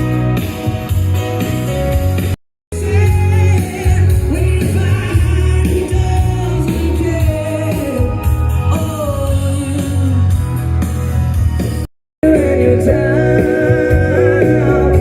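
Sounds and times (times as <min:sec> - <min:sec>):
heavy bass line: 0:00.0 - 0:15.0
person singing: 0:12.2 - 0:15.0.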